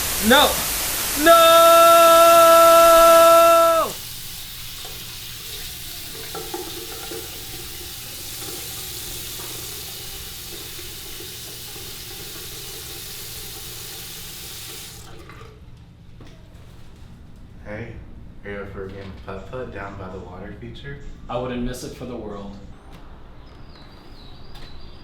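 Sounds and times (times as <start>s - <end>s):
steady rushing hiss: 0.0s - 6.0s.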